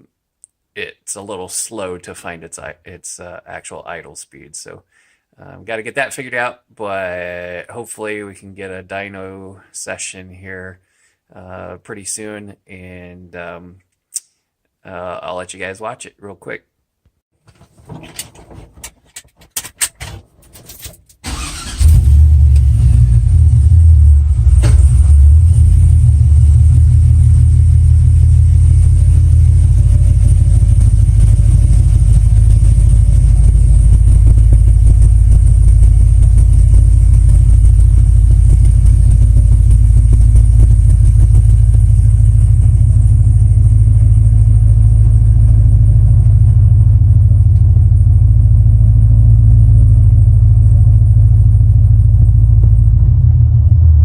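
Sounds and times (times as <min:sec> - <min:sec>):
clicks and knocks: 0:17.4 - 0:21.2
truck engine deep rumble: 0:21.3 - 0:54.0.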